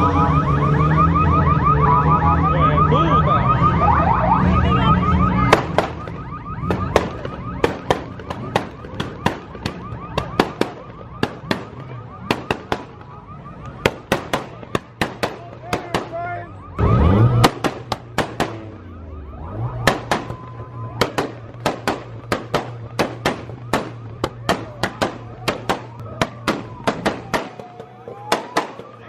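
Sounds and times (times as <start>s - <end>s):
car alarm warbling: 0.0s - 29.0s
loud car engine: 0.0s - 29.0s
sharp cracks: 5.5s - 16.2s, 17.3s - 18.8s, 19.8s - 29.0s.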